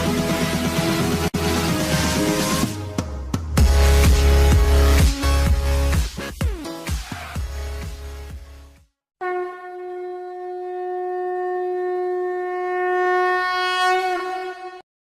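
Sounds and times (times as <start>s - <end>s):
long horn blast: 9.2s - 14.8s.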